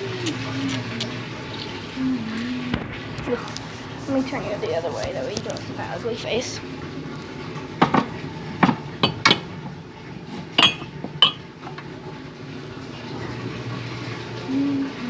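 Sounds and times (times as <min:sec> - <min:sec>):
cups and dishes clinking: 0:07.8 - 0:09.6, 0:10.5 - 0:11.9.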